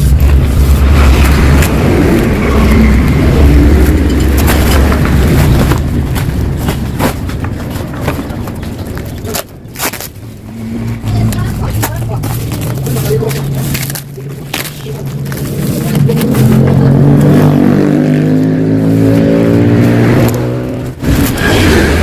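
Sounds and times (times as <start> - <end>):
two-stroke motorcycle engine revving: 15.8 - 22.0.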